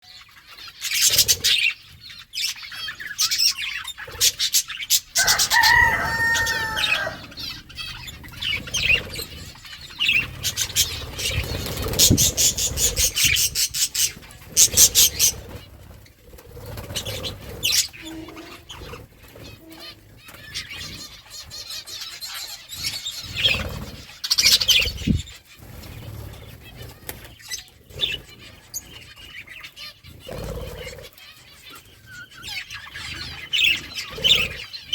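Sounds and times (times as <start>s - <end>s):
budgerigar warbling calls: 2.4s - 15.4s.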